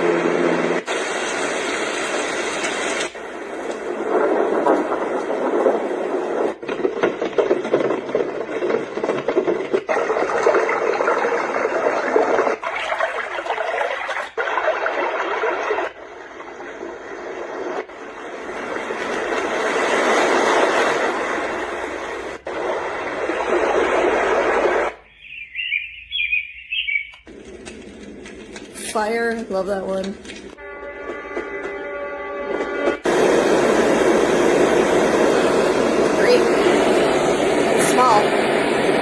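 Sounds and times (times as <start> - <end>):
white noise machine hiss: 0.0 - 7.0, 15.5 - 25.2, 32.9 - 39.0.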